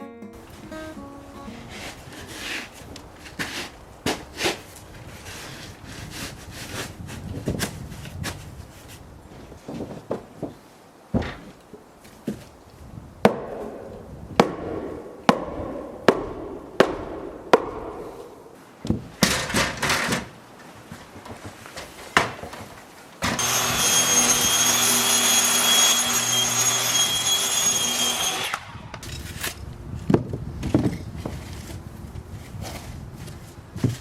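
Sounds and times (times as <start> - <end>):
power tool whining: 23.2 - 29.0.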